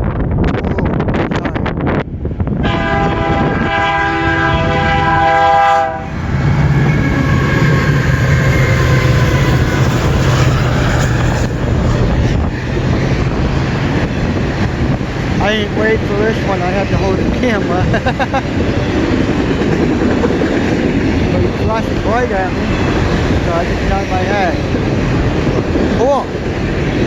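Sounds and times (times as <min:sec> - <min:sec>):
diesel train engine drone: 0:00.0 - 0:27.0
locomotive air horn blast: 0:02.6 - 0:06.2.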